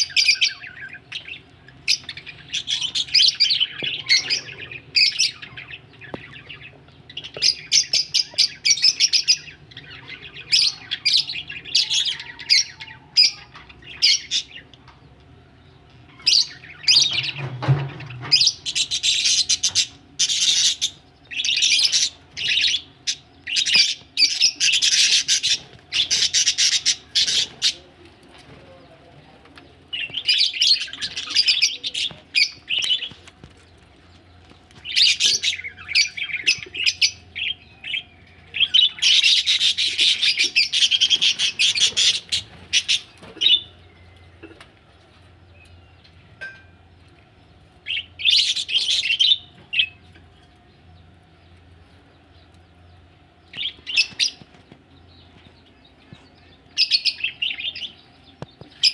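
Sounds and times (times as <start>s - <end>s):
budgerigars chirping and chattering: 0.0s - 58.9s.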